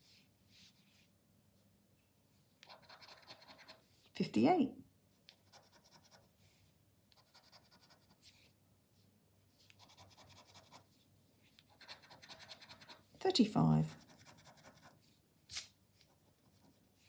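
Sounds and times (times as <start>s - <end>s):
scratch card scratching: 2.6s - 3.8s, 9.7s - 10.9s, 11.7s - 13.1s, 13.9s - 16.8s.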